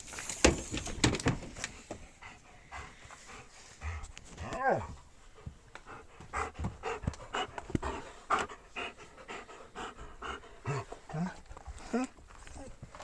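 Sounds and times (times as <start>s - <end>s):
dog panting: 1.9s - 12.2s.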